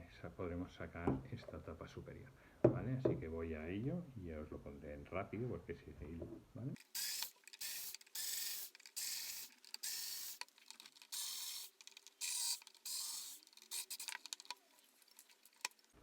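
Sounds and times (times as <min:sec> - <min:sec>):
screwdriver ratcheting: 0:06.8 - 0:14.6.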